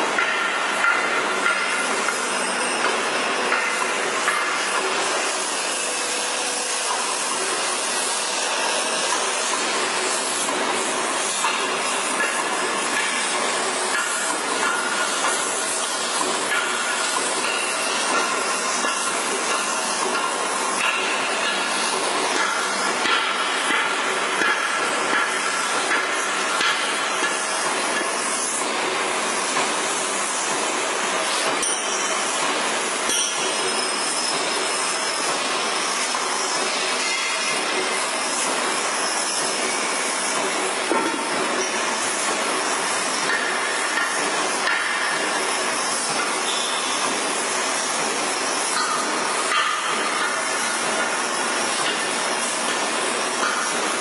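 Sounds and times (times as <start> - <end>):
machine tool cutting metal: 0.0 - 54.0.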